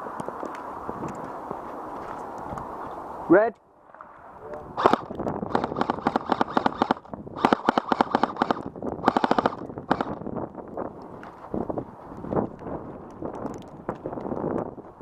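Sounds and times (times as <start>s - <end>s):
airsoft rifle firing bursts: 4.8s - 10.2s.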